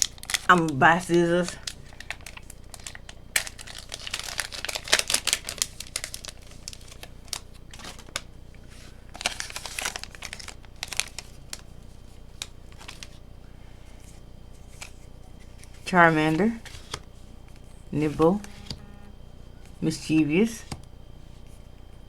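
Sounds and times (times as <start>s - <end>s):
foil wrapper crinkling: 0.0s - 11.7s, 12.4s - 13.2s.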